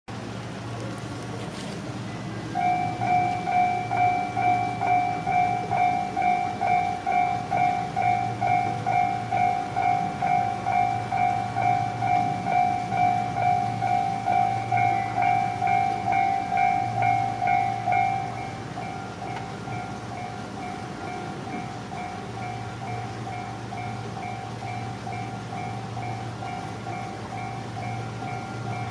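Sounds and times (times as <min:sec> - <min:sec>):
level-crossing warning alarm ringing: 0:02.4 - 0:28.9.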